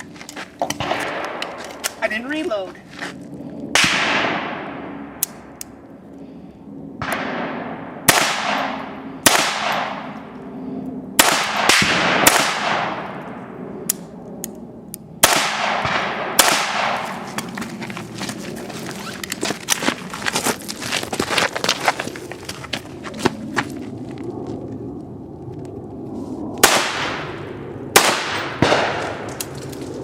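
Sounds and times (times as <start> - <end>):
rifle shots: 3.8 - 4.7, 7.0 - 10.0, 11.2 - 13.1, 15.2 - 17.2, 26.6 - 29.4.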